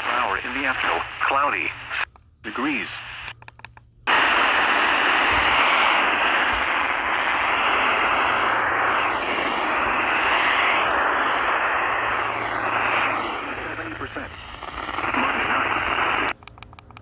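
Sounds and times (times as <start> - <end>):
radio static hiss: 0.0 - 16.4
low hum: 4.1 - 17.0.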